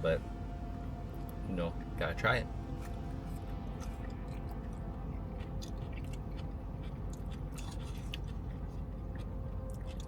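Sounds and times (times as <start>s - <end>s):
steady low hum: 0.0s - 10.0s
person chewing: 2.8s - 10.0s.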